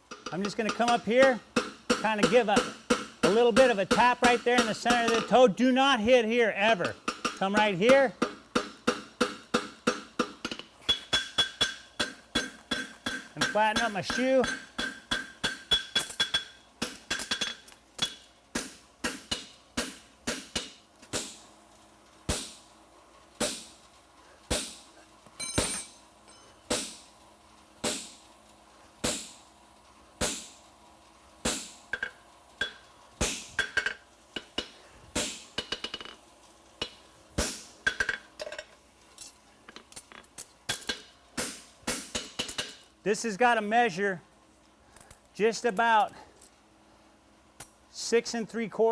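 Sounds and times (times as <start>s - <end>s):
hammer striking horseshoe on anvil: 0.1s - 5.4s, 6.8s - 21.4s, 22.3s - 22.6s, 23.4s - 23.7s, 24.5s - 24.8s, 25.4s - 27.0s, 27.8s - 28.2s, 29.0s - 29.4s, 31.5s - 36.2s, 36.8s - 38.6s, 40.7s - 42.8s.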